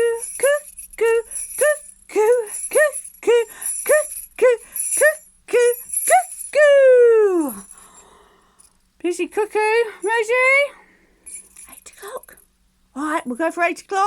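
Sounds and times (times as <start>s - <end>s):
woman calling cuckoo: 0.0s - 7.7s
jingle bells shaking: 0.0s - 8.1s, 9.4s - 10.7s, 11.3s - 13.9s.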